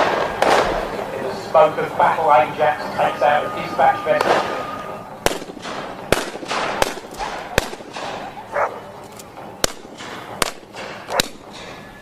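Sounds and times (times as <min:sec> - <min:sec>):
model cannons firing: 0:00.0 - 0:01.1, 0:04.2 - 0:04.6, 0:05.2 - 0:08.5, 0:09.6 - 0:11.8.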